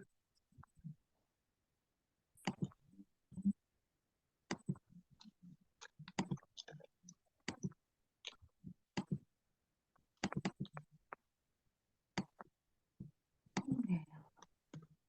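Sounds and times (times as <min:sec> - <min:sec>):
irregular clicks and taps: 0:02.4 - 0:02.9, 0:04.5 - 0:09.3, 0:09.9 - 0:11.3, 0:12.1 - 0:15.0.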